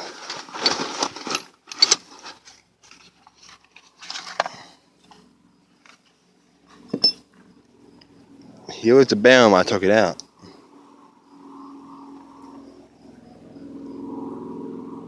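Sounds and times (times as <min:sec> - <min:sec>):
handling rustle with metal clicks: 0:00.0 - 0:08.5.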